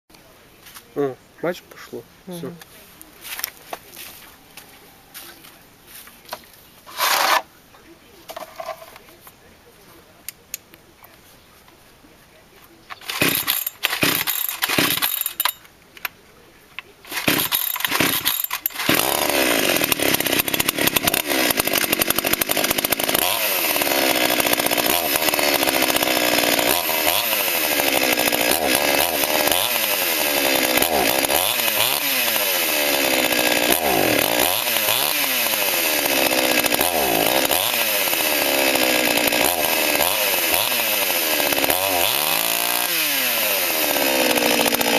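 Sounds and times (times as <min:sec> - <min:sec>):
chainsaw engine sputtering: 0:12.9 - 0:15.7, 0:17.0 - 0:44.9.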